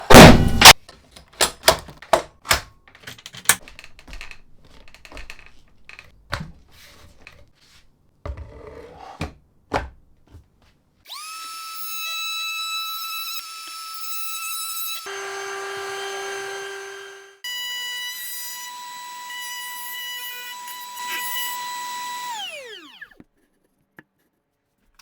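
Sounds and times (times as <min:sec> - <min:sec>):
power tool motor whine: 0:11.1 - 0:23.2.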